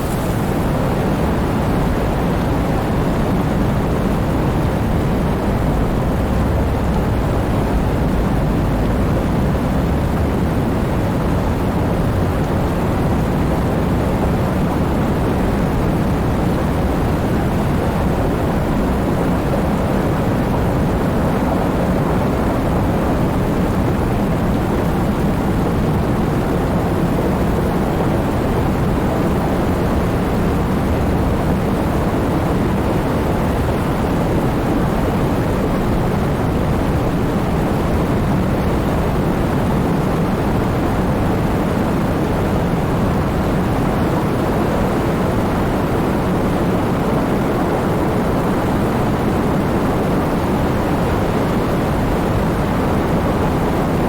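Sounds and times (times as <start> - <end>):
heavy rain: 0.0 - 19.4.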